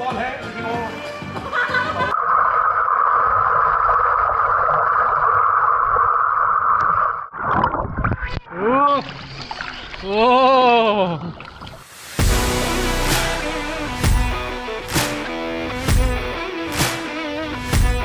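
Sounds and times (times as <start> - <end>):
water splashes: 8.9 - 13.7.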